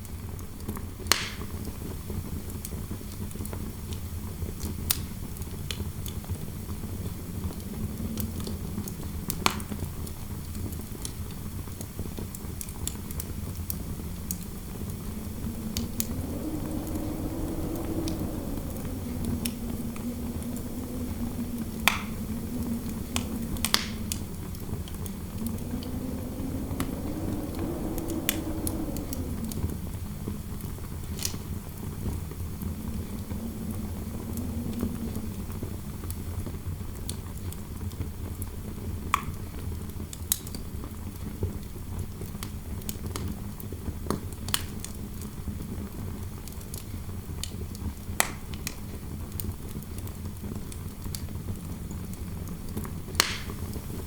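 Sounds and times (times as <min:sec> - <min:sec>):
low howling wind: 0:00.0 - 0:54.0
wood fire crackling and popping: 0:00.6 - 0:01.7, 0:02.6 - 0:36.3, 0:46.4 - 0:54.0.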